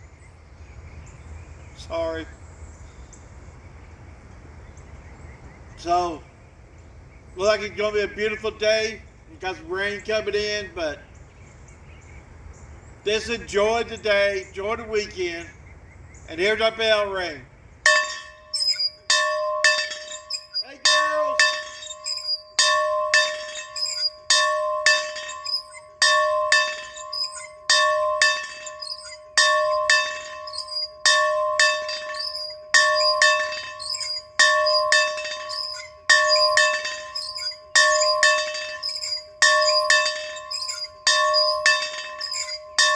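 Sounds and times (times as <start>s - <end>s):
bell ringing: 17.9s - 42.9s.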